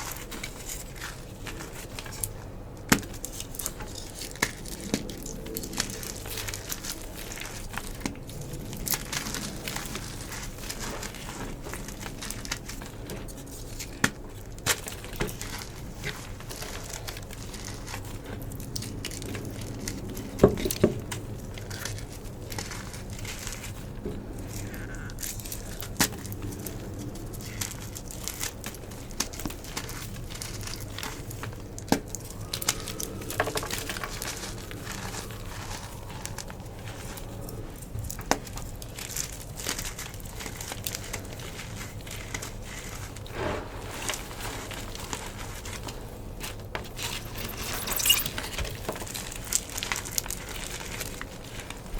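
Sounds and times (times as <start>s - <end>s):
chalk crushing and crackling: 0.0s - 51.9s
low steady background noise: 0.0s - 51.9s.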